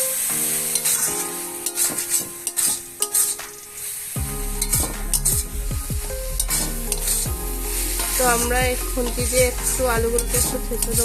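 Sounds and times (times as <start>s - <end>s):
spatula scraping a pan: 0.7s - 3.6s.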